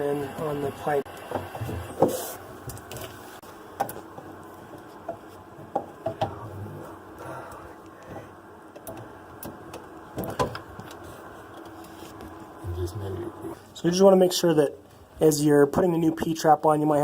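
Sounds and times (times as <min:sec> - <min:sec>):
pipe parts clicking and knocking: 0:05.0 - 0:06.4.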